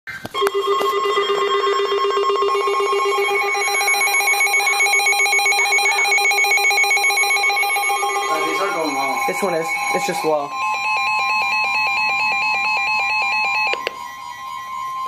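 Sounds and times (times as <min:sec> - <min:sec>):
pulsing electronic alarm tone: 0:00.4 - 0:15.0.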